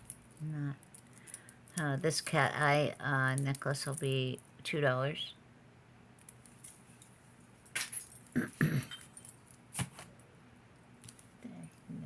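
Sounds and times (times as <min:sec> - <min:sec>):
metal jewelry jingling and clicking: 0:06.2 - 0:09.6.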